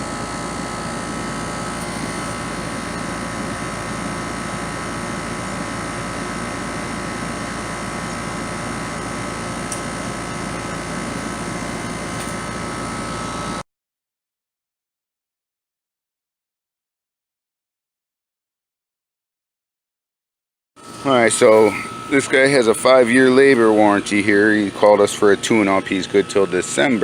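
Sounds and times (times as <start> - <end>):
air conditioner humming: 0.0 - 13.6, 20.8 - 27.0.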